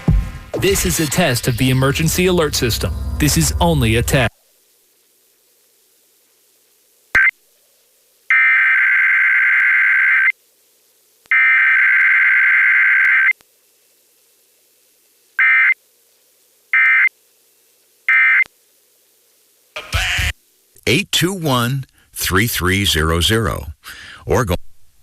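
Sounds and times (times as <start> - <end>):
buzzing digital data bursts: 0.6 - 4.3.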